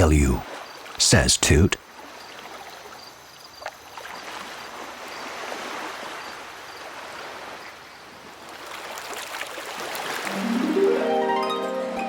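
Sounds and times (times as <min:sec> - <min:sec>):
sea water lapping in harbour: 0:00.4 - 0:01.0, 0:01.8 - 0:10.4.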